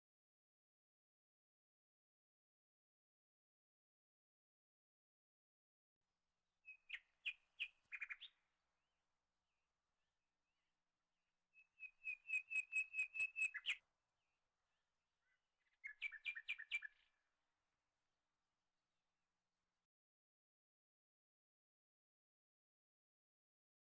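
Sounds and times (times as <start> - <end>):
small bird chirping: 6.7 - 8.4, 11.6 - 13.8, 15.2 - 17.1.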